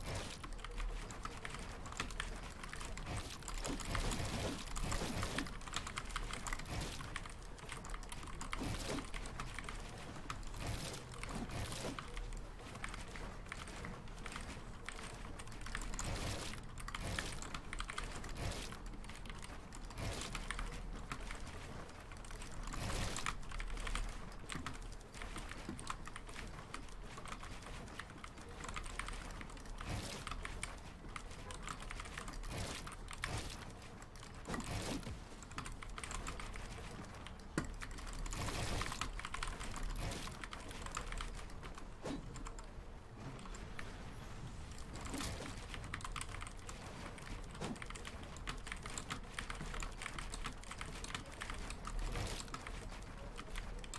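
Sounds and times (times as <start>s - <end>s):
mechanical keyboard keys clacking: 16.8s - 18.2s, 44.7s - 53.9s.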